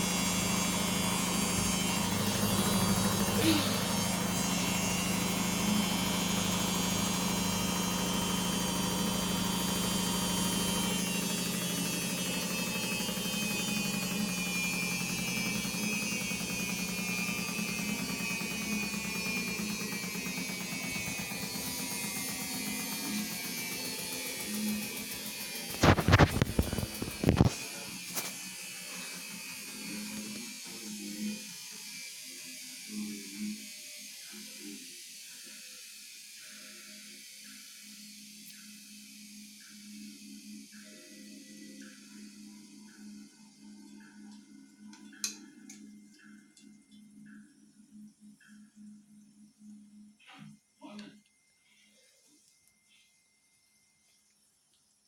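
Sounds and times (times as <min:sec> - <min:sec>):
washing machine humming: 0:00.0 - 0:30.6.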